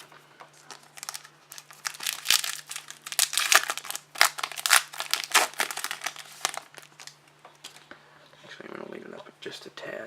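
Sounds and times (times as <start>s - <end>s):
plastic wrapper crinkling: 0.0s - 7.8s.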